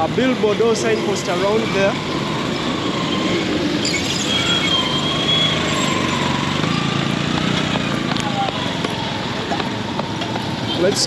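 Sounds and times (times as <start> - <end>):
road traffic passing: 0.0 - 11.0
thin high squeal: 3.8 - 6.1.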